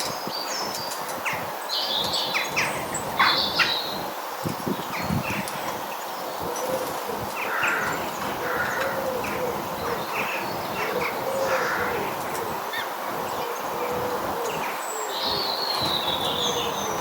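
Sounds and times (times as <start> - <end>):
birds chirping: 0.0 - 17.0
pigeon cooing: 6.4 - 14.7.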